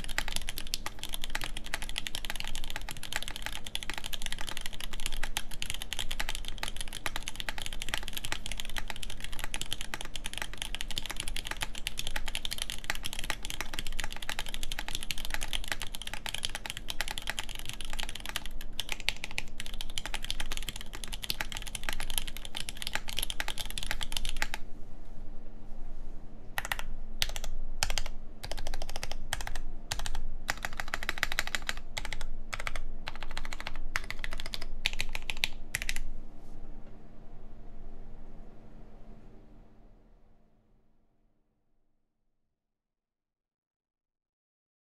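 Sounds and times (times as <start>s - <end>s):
mechanical keyboard typing: 0.0s - 24.6s, 26.6s - 36.1s.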